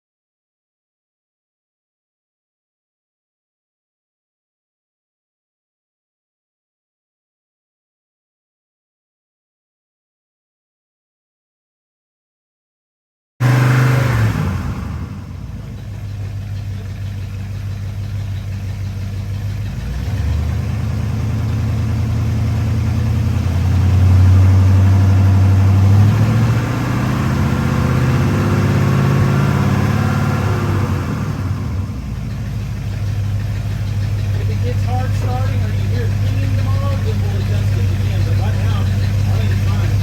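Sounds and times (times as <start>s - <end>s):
truck engine idling: 13.4s - 40.0s.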